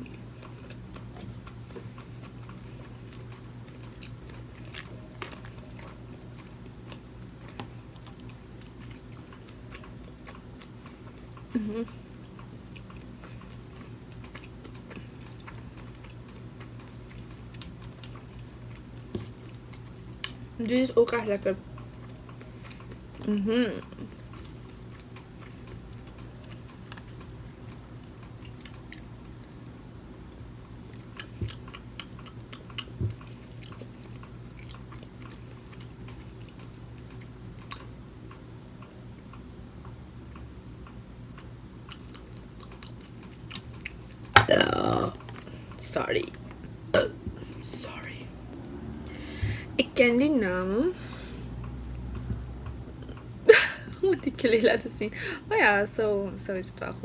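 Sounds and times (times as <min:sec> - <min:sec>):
chewing with wet mouth clicks: 0:00.0 - 0:20.4, 0:21.7 - 0:29.5, 0:30.6 - 0:44.4
steady low hum: 0:00.0 - 0:57.0.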